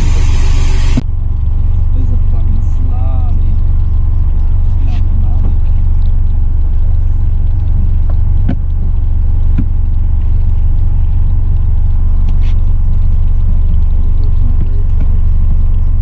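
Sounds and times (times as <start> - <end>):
boat motor rumbling: 0.0 - 16.0.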